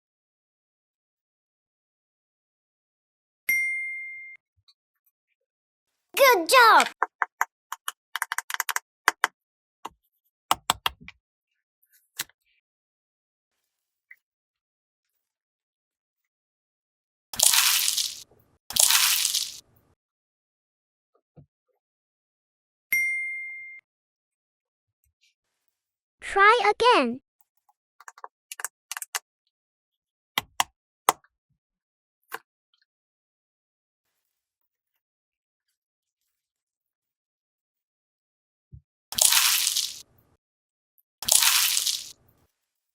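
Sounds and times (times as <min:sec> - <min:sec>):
small hard toys clicking: 0:06.8 - 0:09.3.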